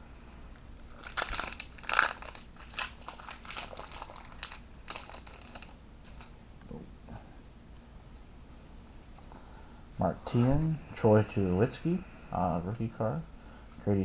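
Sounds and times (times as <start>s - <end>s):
plastic wrapper crinkling: 0.9s - 6.3s.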